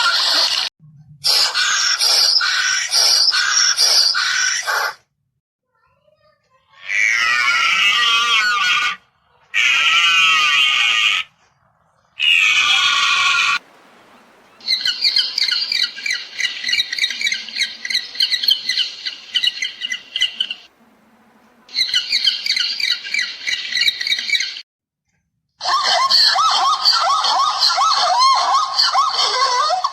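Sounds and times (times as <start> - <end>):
animal squawking calls: 1.3 - 5.0, 6.8 - 11.4, 12.2 - 13.6, 14.5 - 20.7, 21.7 - 24.6, 25.6 - 29.9.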